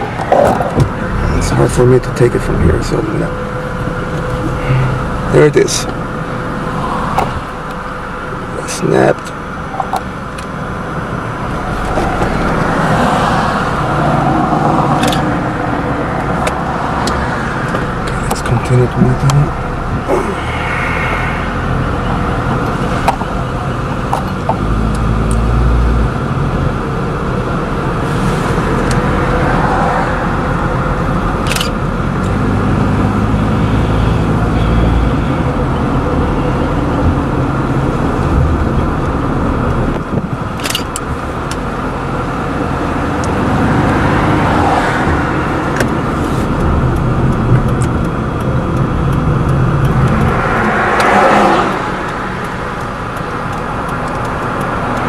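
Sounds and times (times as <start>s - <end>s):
car engine and tyre noise: 0.0s - 55.0s.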